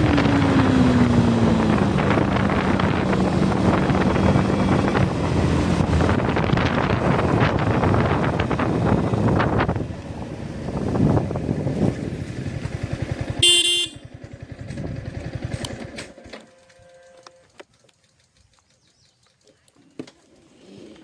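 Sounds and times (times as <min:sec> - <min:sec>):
motorcycle engine running: 0:00.0 - 0:19.4
horn honk: 0:13.4 - 0:14.1, 0:16.2 - 0:17.3.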